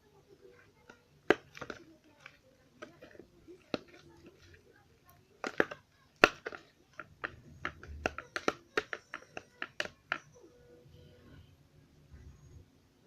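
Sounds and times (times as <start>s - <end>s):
slime being stirred: 0.0s - 10.3s.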